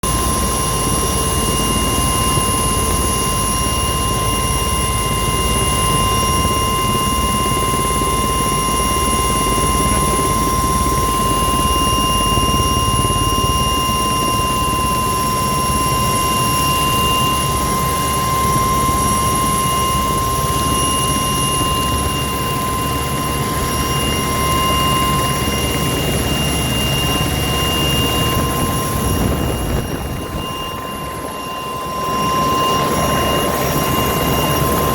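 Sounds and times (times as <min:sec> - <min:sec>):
aircraft motor and rotor whine: 0:00.0 - 0:34.9.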